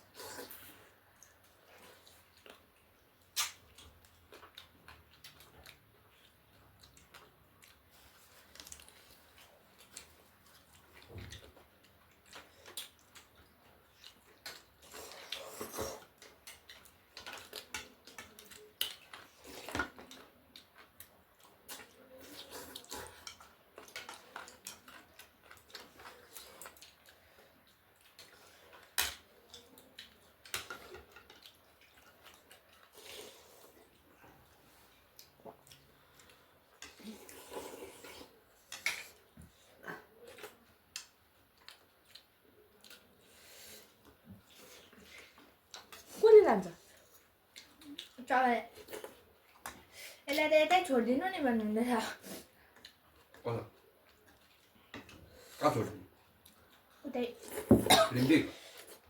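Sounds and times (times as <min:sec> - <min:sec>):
slurping soup: 0:00.0 - 0:01.0, 0:14.8 - 0:16.2, 0:32.8 - 0:34.0, 0:36.8 - 0:39.2.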